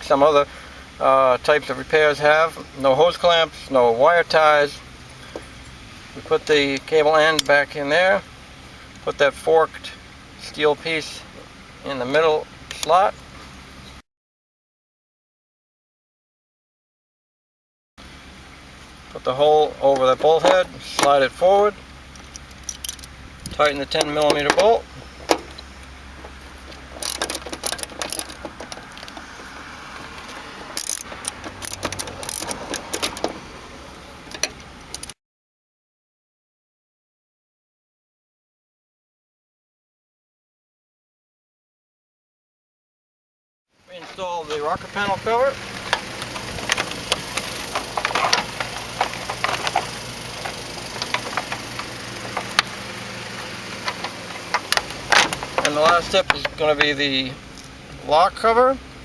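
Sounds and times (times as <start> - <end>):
ratchet wrench clicking: 22.2 - 23.1, 27.0 - 29.2, 30.8 - 33.4
metal handling clinks: 26.8 - 29.2
plastic clicks and knocks: 53.7 - 56.6.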